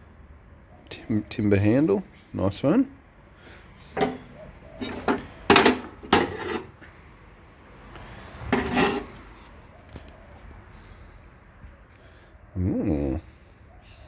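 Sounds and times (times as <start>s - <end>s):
hand tools scraping and knocking: 4.0s - 6.8s, 8.4s - 9.3s.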